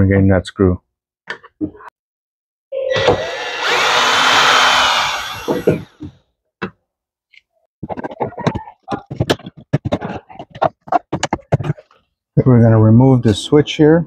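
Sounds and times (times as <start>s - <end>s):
power driver motor whine: 2.9s - 6.1s.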